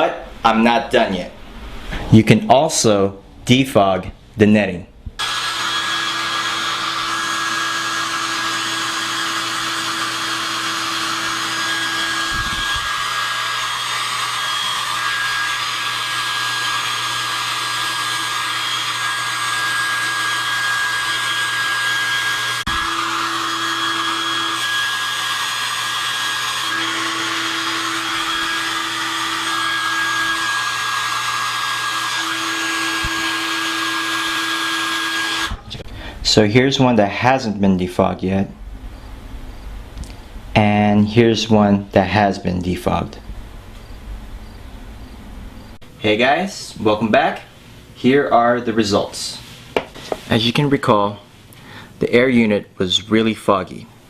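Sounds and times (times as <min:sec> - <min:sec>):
hair dryer blowing: 0:05.2 - 0:35.7.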